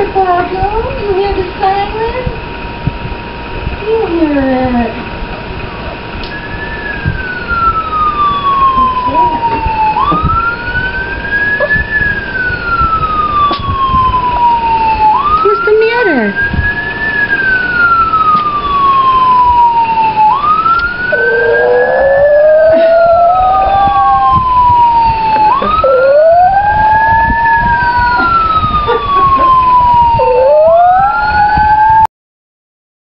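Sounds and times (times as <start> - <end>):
lower siren wail: 6.3 - 32.1
police siren wailing: 6.4 - 32.1.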